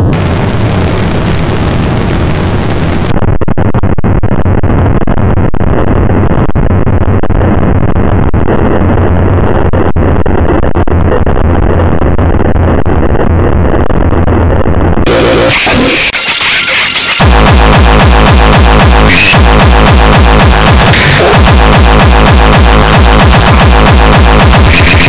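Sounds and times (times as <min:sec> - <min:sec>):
heavy low hum: 0:00.0 - 0:03.2, 0:17.2 - 0:25.0
distorted electronic noise music: 0:00.0 - 0:25.0.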